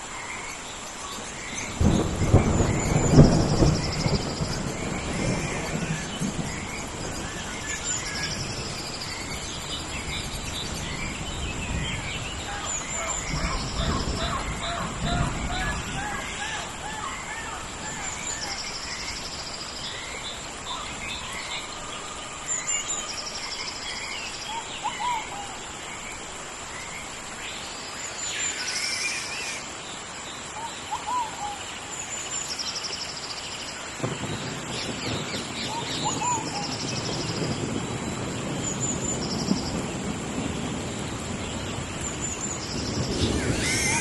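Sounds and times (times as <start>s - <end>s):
insect drone: 0.0s - 44.0s
rain rushing: 0.0s - 44.0s
birds chirping and whistling: 1.1s - 26.1s, 41.5s - 44.0s.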